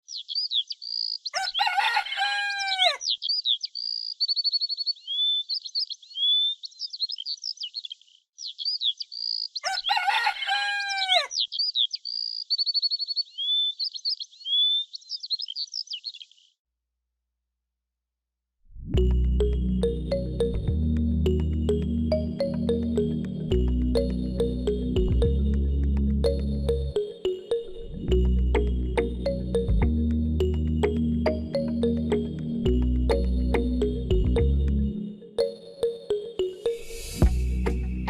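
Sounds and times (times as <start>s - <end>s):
songbirds chirping and trilling: 0.0s - 16.7s, 19.4s - 38.0s
rooster crowing: 1.4s - 3.0s, 9.6s - 11.4s.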